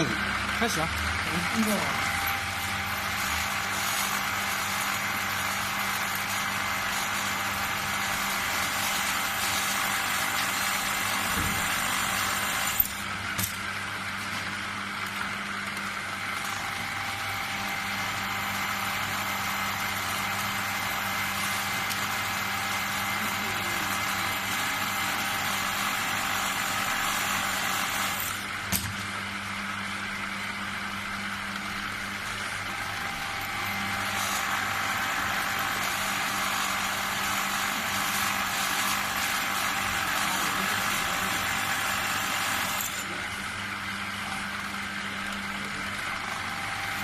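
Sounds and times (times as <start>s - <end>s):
motor humming with hiss: 0.0s - 47.0s.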